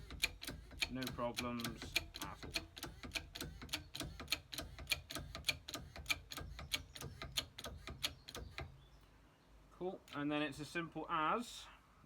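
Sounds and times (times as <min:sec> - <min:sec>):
rapid mechanical clicking: 0:00.0 - 0:08.8.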